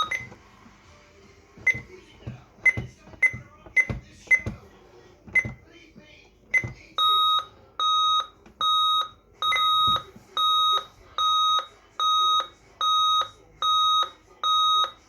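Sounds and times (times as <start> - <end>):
alarm keypad beeping: 0.0 - 0.4, 1.6 - 1.9, 6.5 - 15.0.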